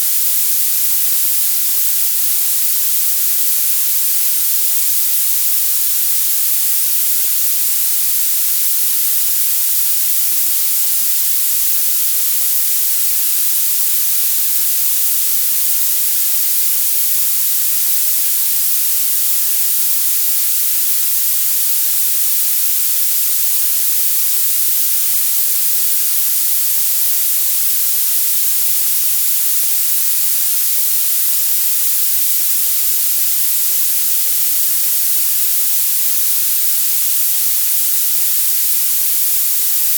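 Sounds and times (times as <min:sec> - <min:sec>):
high-pitched hiss: 0:00.0 - 0:39.9.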